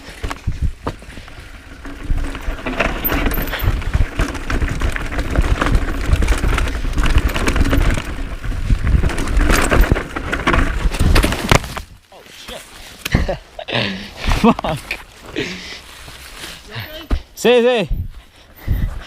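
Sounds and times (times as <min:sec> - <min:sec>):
mountain bike rattling on rocky trail: 0:00.0 - 0:13.4.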